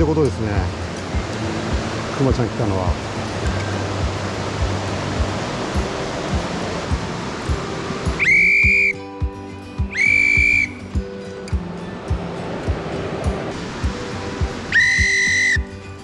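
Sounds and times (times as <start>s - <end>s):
mountain stream rushing: 0.0s - 16.0s
high piercing whistle blasts: 8.2s - 9.2s, 9.9s - 10.8s, 14.7s - 15.8s.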